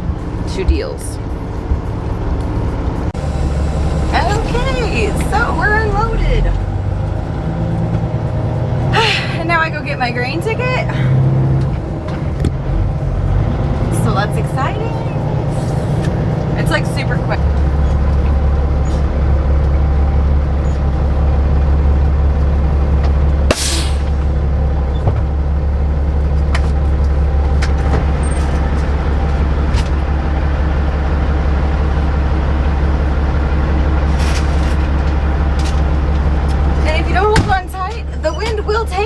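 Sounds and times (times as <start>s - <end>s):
truck diesel engine droning: 0.0s - 39.0s
air brake hiss: 23.5s - 24.3s.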